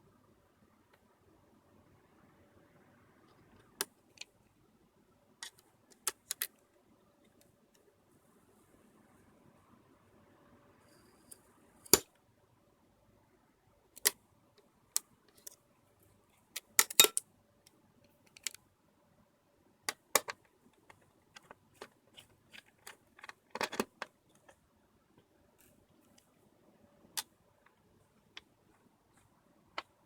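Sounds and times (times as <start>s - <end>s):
laptop parts clicking and knocking: 5.4s - 6.6s, 16.4s - 17.3s, 18.1s - 18.6s, 19.9s - 24.6s.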